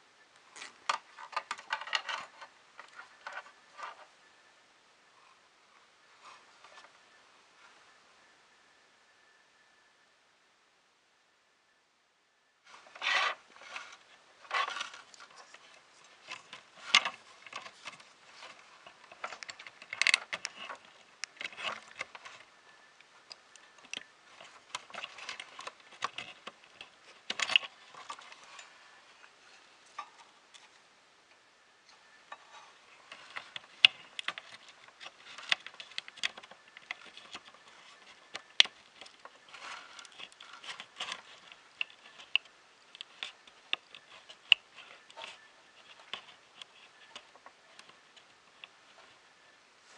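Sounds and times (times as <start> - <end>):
hands handling plastic parts: 0.4 - 4.1, 12.7 - 30.8, 31.9 - 49.6.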